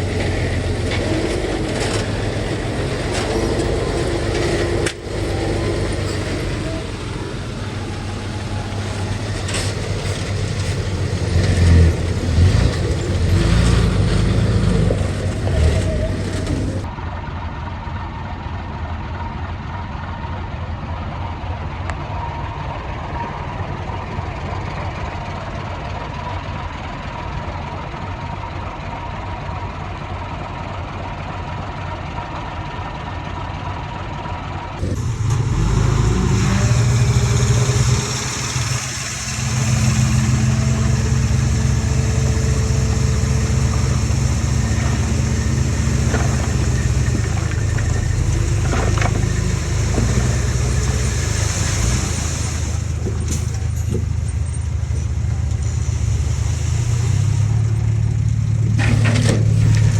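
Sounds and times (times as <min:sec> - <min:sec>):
heavy machinery diesel engines: 0:00.0 - 0:59.9.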